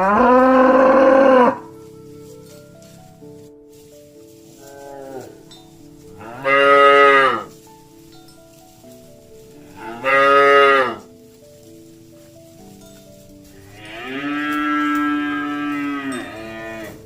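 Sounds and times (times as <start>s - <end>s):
cow mooing: 0.0s - 2.9s, 4.6s - 5.5s, 6.2s - 7.5s, 9.6s - 11.1s, 13.7s - 17.0s.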